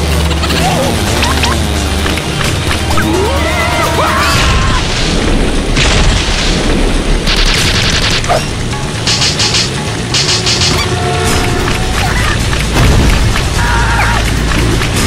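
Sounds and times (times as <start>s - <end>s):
cartoon music: 0.4s - 1.7s
low booming sound effects: 4.3s - 13.6s.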